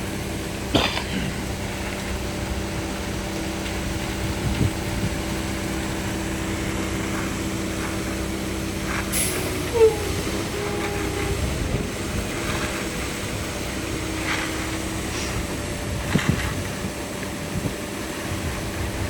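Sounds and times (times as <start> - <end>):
engine running with low hum: 0.0 - 19.0
brief squeal: 9.2 - 11.5.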